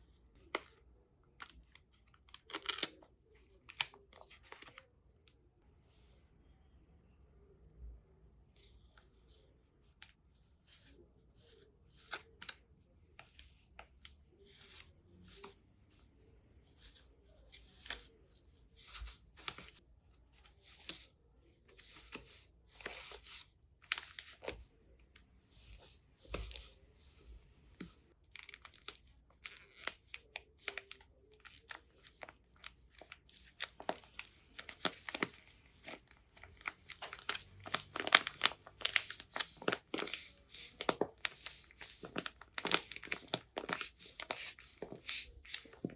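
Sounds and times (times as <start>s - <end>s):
paper crinkling and tearing: 28.2s - 45.9s.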